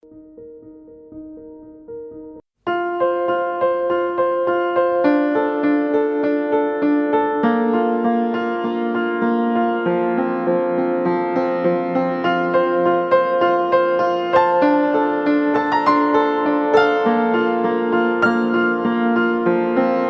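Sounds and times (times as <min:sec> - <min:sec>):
background piano music: 0:00.0 - 0:20.0.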